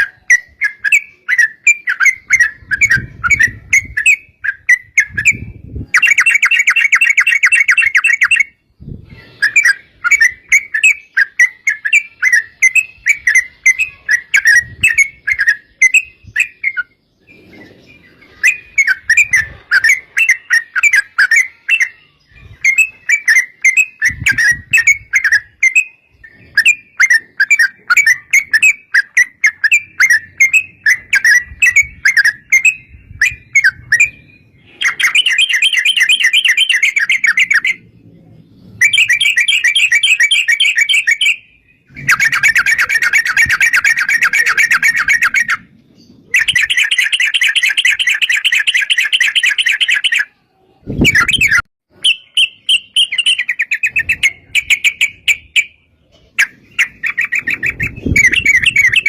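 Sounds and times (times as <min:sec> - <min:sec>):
bird rapid rolling trills: 0:56.4 - 0:59.0
bird bubbly chirping: 0:56.8 - 0:59.0.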